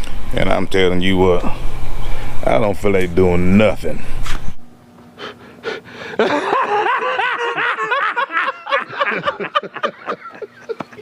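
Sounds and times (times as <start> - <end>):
man chuckling: 6.0 - 11.0.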